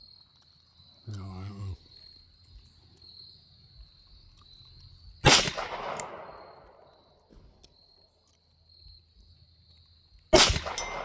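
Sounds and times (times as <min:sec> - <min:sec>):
insects chirring: 0:00.0 - 0:11.0
pistol shot: 0:05.2 - 0:07.0, 0:10.3 - 0:11.0.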